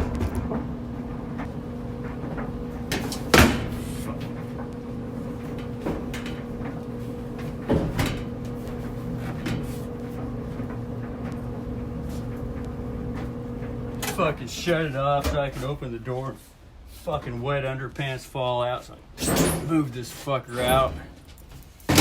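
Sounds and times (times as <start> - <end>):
hard knocks and bangs: 0.0 - 4.7
clothes dryer humming: 0.0 - 22.0.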